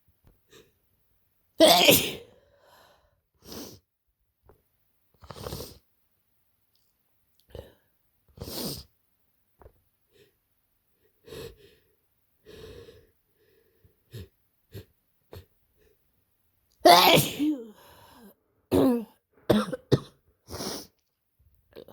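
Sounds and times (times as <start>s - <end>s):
person sneezing: 1.6s - 2.3s, 16.8s - 17.8s, 18.7s - 19.9s
person sniffling: 20.4s - 21.0s.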